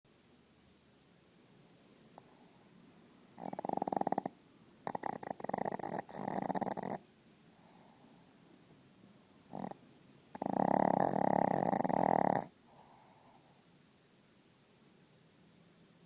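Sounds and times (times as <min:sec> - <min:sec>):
dog snoring loudly: 0:03.4 - 0:07.0, 0:09.5 - 0:13.3
faint breath: 0:07.5 - 0:08.4, 0:12.6 - 0:13.7.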